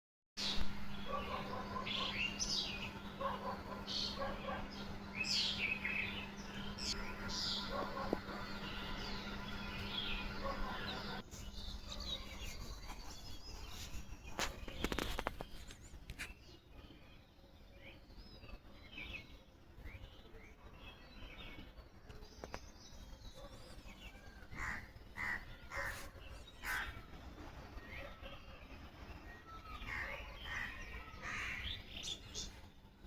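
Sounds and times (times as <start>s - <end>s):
harsh bird calls: 0.4s - 15.7s, 24.4s - 27.2s, 29.5s - 32.6s
birds chirping in chorus: 0.4s - 16.3s, 22.4s - 27.2s, 29.2s - 32.7s.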